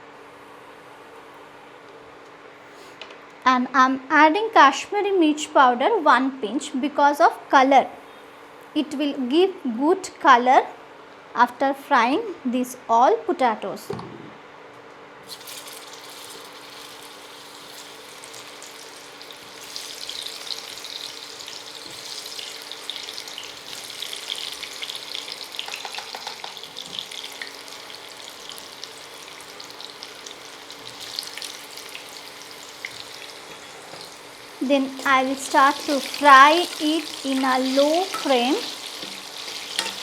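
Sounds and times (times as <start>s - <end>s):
potatoes sizzling in hot oil: 15.2s - 40.0s.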